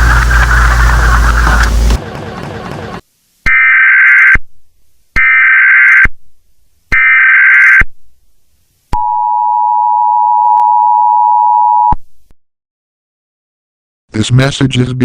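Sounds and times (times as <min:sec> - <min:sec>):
buzzy digital header bursts: 0:00.0 - 0:02.0.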